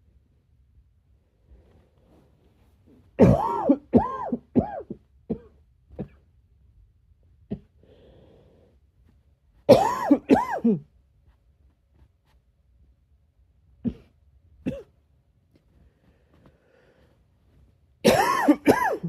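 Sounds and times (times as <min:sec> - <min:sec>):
person coughing: 0:03.2 - 0:06.2, 0:09.7 - 0:10.9, 0:13.8 - 0:15.0, 0:18.0 - 0:19.0
faint breath: 0:07.8 - 0:08.9, 0:15.7 - 0:17.5.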